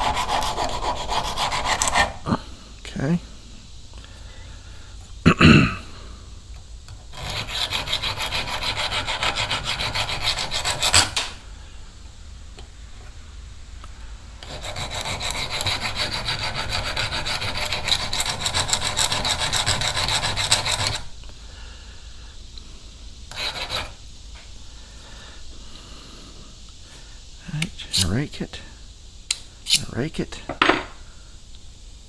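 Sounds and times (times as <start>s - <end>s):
hand file rasping on steel blade: 0.0s - 2.2s, 7.1s - 11.3s, 14.4s - 21.1s, 23.3s - 24.0s.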